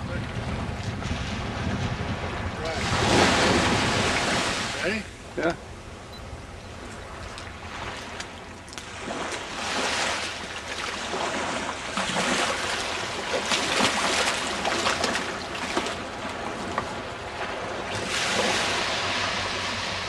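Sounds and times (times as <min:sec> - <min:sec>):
surf breaking on beach: 0:00.0 - 0:05.6, 0:08.8 - 0:16.7, 0:17.4 - 0:20.0.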